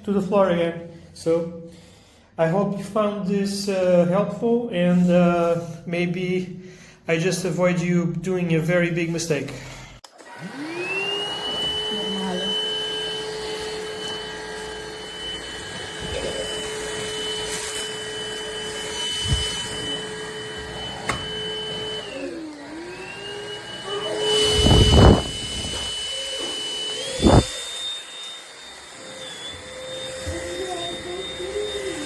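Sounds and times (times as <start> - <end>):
vacuum cleaner motor whining: 10.0 - 32.0.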